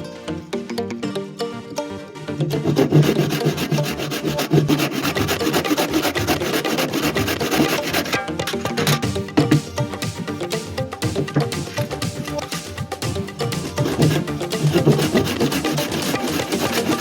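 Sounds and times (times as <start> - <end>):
background music: 0.0 - 17.0
hand tool rasping against wood: 2.5 - 8.3, 13.6 - 17.0.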